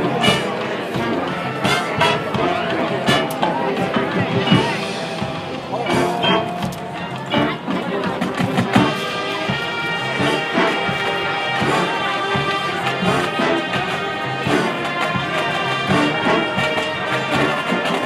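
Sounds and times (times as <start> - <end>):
drum hits: 0.0 - 16.8
brass holding chords: 0.0 - 18.0.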